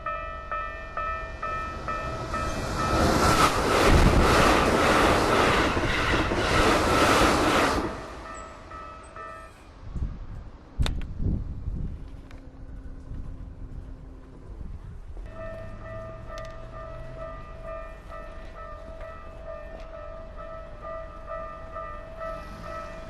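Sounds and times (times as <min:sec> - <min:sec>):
level crossing warning bell: 0:00.0 - 0:05.3, 0:06.5 - 0:09.9, 0:15.2 - 0:23.0
train passing: 0:00.0 - 0:23.0.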